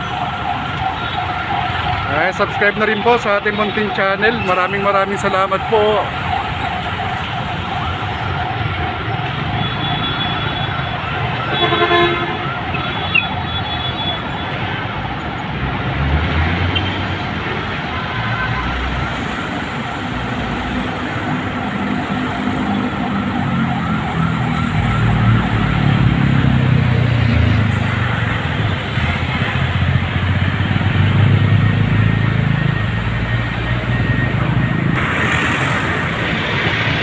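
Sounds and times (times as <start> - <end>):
traffic passing: 0.0 - 37.0
car horn: 11.4 - 14.3
heavy vehicle engine passing: 24.6 - 37.0.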